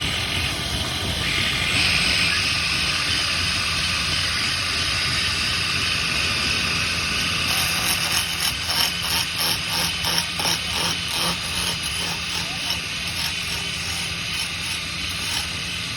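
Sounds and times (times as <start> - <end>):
hissing machine noise: 0.0 - 15.9
rhythmic short strokes: 7.4 - 15.9.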